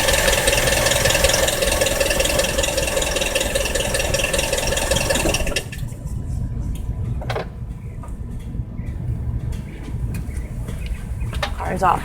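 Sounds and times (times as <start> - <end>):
diesel engine idling with rattle: 0.0 - 12.0.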